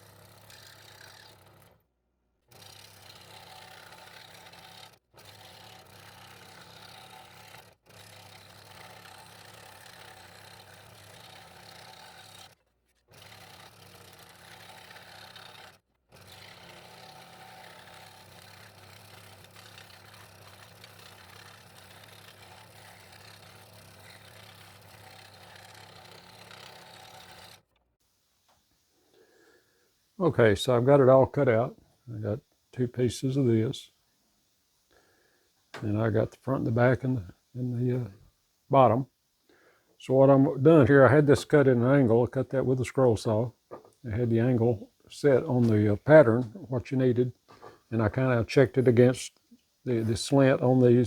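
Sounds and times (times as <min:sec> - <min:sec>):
scroll saw cutting wood: 0:00.0 - 0:27.9, 0:40.2 - 0:51.0.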